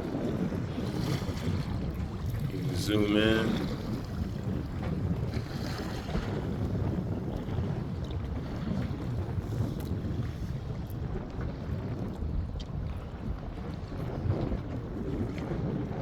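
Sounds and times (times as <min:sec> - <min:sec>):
water splashing around kayak: 0:00.0 - 0:16.0
wind buffeting microphone: 0:00.0 - 0:16.0.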